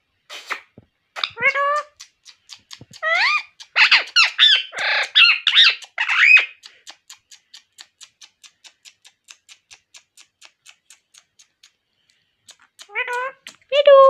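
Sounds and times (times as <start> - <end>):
parrot squawking: 0.3 - 7.2, 12.8 - 13.6.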